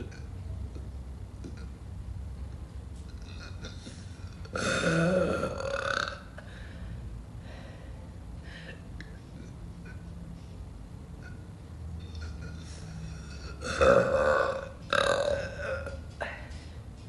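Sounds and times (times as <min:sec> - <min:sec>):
woman burping: 0:03.2 - 0:06.5, 0:12.2 - 0:16.4.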